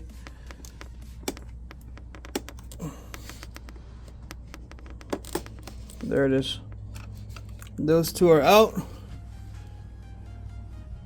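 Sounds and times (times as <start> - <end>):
clicks and taps of small parts: 0.0 - 6.1
steady low hum: 0.0 - 11.0.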